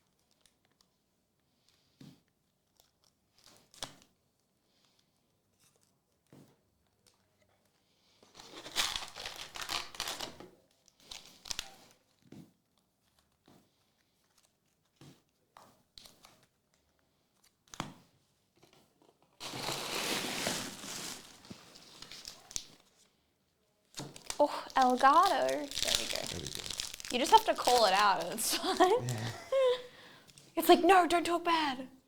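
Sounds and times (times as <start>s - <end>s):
card pack wrappers crinkling: 19.4s - 22.8s, 24.0s - 29.9s.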